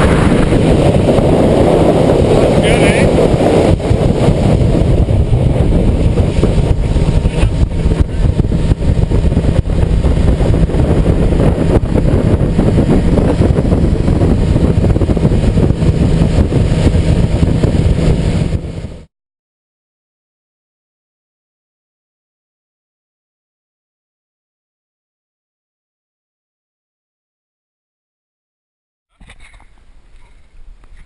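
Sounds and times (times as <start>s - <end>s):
motorboat engine hum: 0.0s - 19.1s
wind noise on microphone: 0.0s - 19.1s.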